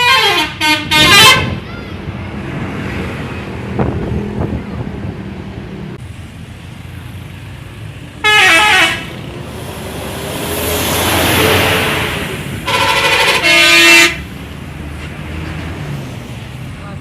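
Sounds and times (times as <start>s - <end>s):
bus musical horn: 0.0s - 1.6s, 8.2s - 9.2s, 11.4s - 14.3s
engine and traffic noise: 0.0s - 17.0s
rushing vehicle noise: 0.0s - 17.0s.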